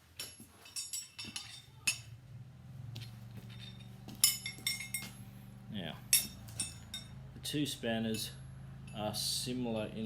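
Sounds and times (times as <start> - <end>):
metal spanners clinking: 0.2 - 2.2, 3.4 - 5.3, 6.1 - 7.2.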